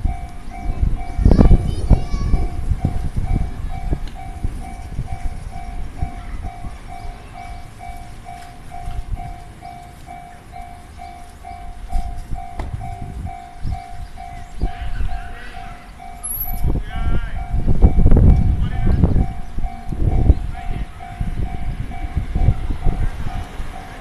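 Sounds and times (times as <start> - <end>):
train passing rumble: 0.0 - 24.0.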